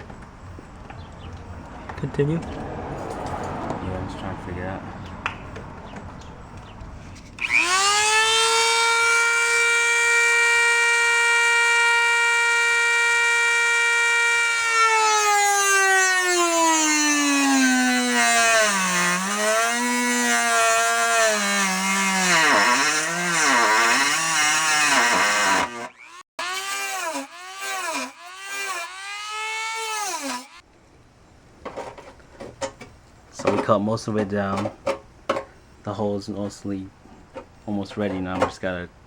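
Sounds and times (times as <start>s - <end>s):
rotary tool whining: 7.2s - 30.6s
rotary tool cutting metal: 7.4s - 30.6s.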